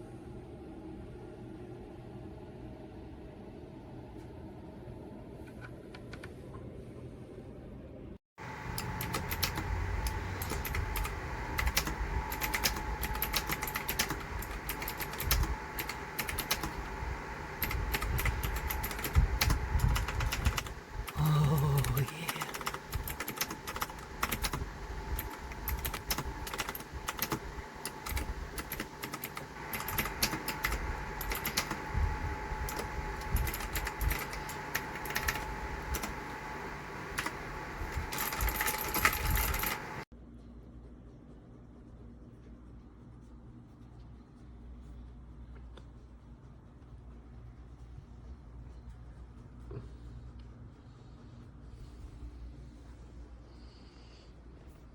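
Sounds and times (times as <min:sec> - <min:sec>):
clicky mechanical keyboard typing: 0:08.5 - 0:31.9, 0:32.6 - 0:36.3, 0:37.0 - 0:40.0.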